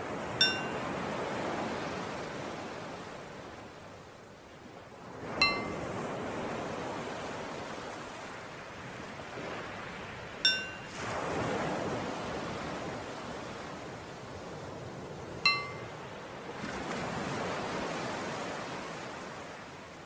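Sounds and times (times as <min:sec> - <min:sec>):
ocean waves washing in: 0:00.0 - 0:03.8, 0:04.8 - 0:20.0
small bell ringing: 0:00.4 - 0:00.8, 0:05.4 - 0:05.8, 0:10.5 - 0:10.9, 0:15.5 - 0:15.9.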